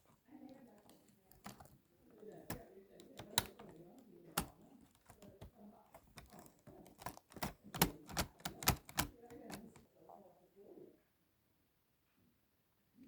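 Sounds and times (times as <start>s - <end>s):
sharp clicks and taps: 0.8s - 3.8s, 4.4s - 9.8s.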